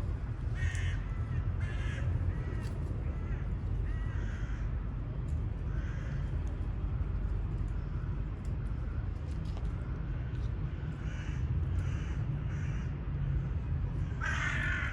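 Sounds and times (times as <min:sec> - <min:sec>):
steady low rumble: 0:00.0 - 0:14.9
crows cawing: 0:00.5 - 0:04.8, 0:05.6 - 0:06.4, 0:10.7 - 0:14.9.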